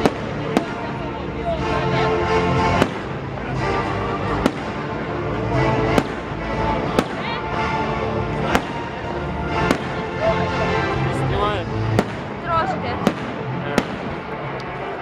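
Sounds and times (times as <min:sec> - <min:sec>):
fireworks bangs: 0:00.0 - 0:01.0, 0:02.6 - 0:07.4, 0:08.3 - 0:10.2, 0:11.9 - 0:14.8
loud music: 0:00.0 - 0:15.0.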